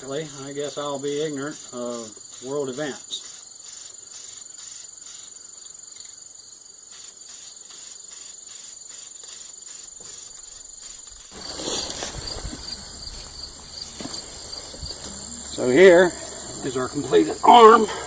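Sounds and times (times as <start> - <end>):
crickets chirping: 0.0 - 18.0
loud rustling with low rumble: 11.2 - 17.0.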